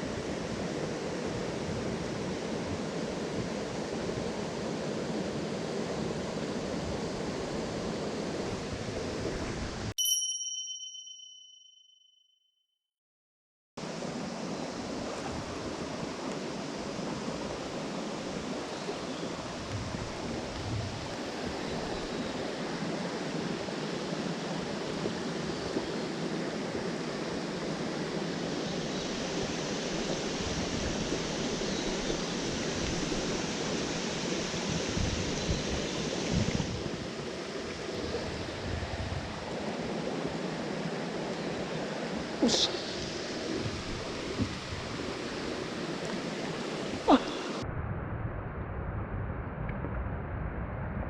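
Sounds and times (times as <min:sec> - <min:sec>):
mountain stream rushing: 0:13.8 - 0:47.6.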